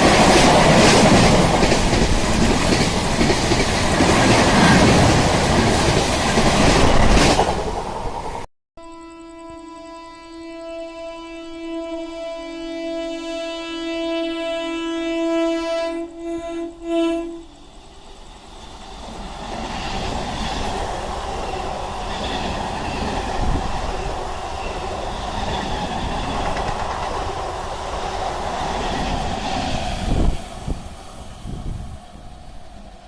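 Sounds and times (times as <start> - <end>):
train wheels rushing on rails: 0.0 - 8.5, 17.4 - 33.0.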